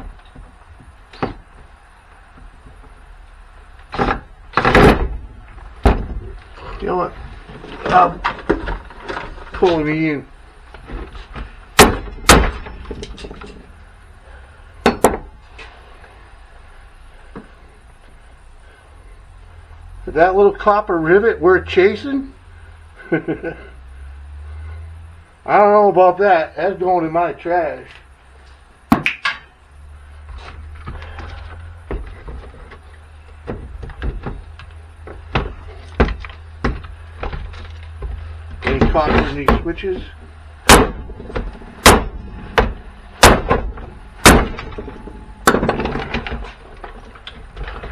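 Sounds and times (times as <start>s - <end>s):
steady low hum: 0.0s - 47.9s
metal parts and tools clinking: 10.7s - 13.9s.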